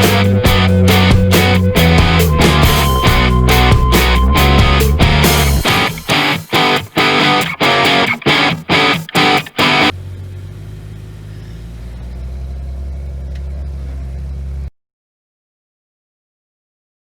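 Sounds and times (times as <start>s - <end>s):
rock music electric guitar: 0.0s - 9.9s
engine idling: 9.5s - 14.7s.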